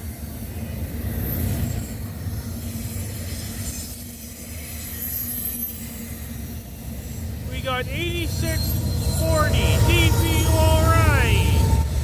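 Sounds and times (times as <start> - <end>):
diesel locomotive engine hum: 7.0 - 12.0
freight train cars rumbling: 7.2 - 12.0
high wheel squeal: 7.5 - 12.0.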